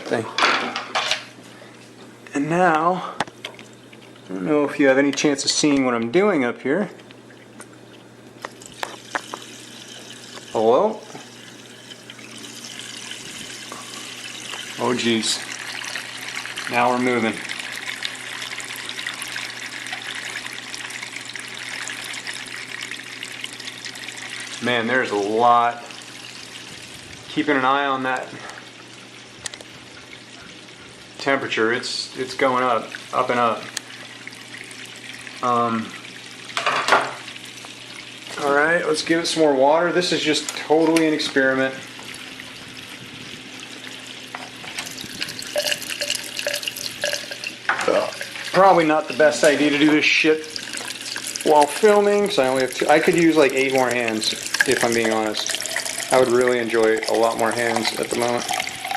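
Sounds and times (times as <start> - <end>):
low steady hum: 0.0 - 58.9
water trickling and splashing: 7.1 - 39.2, 40.1 - 58.9.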